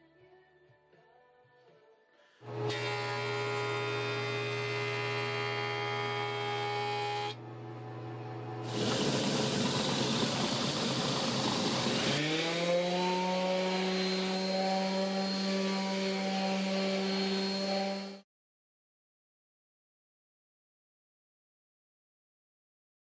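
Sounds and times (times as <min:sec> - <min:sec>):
power tool cutting wood: 0:02.4 - 0:18.2.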